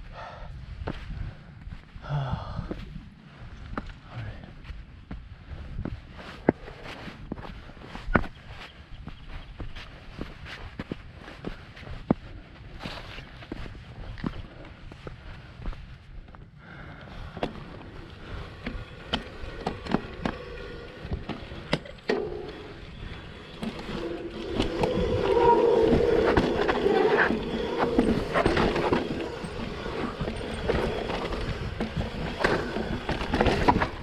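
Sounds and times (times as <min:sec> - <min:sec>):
bike rattling over rocks: 0:17.2 - 0:34.0.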